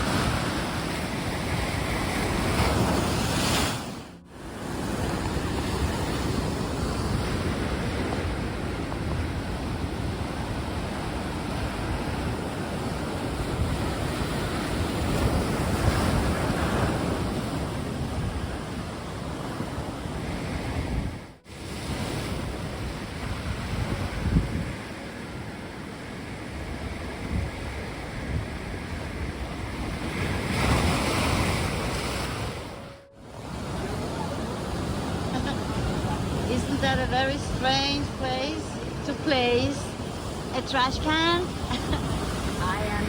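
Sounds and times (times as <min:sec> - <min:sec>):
surf washing onto beach: 0:00.0 - 0:43.0
wind buffeting microphone: 0:00.0 - 0:43.0.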